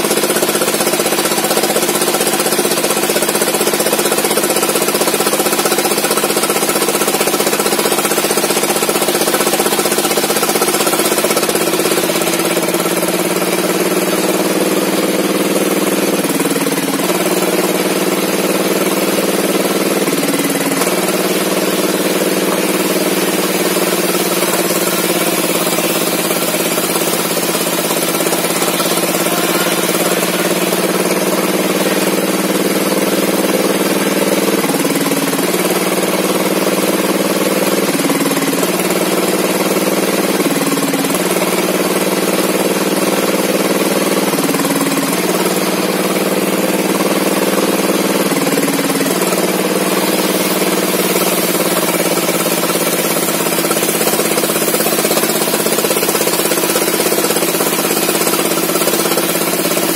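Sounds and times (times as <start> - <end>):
log saw engine running: 0.0 - 59.9.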